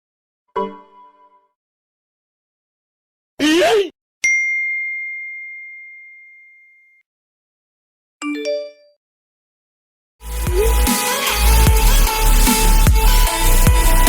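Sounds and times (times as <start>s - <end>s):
music: 0.5s - 1.6s, 10.2s - 14.0s
bell-like ding: 4.2s - 7.0s.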